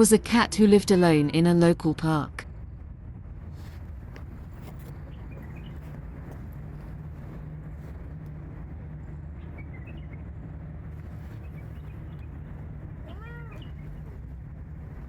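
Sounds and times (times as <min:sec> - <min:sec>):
distant traffic rumble: 0:00.0 - 0:15.0
bird chirps: 0:05.1 - 0:05.8
cat meowing: 0:13.0 - 0:13.7.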